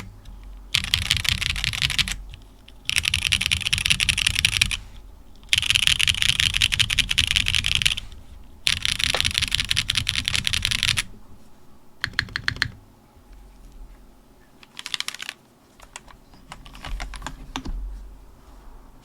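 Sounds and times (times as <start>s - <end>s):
mechanical keyboard typing: 0.7s - 4.8s, 5.5s - 11.1s, 12.0s - 12.8s, 14.6s - 17.8s.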